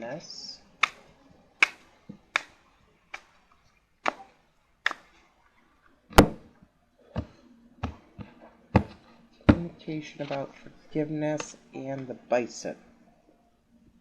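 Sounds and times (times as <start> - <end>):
cards tapping on a table: 7.2 - 9.6.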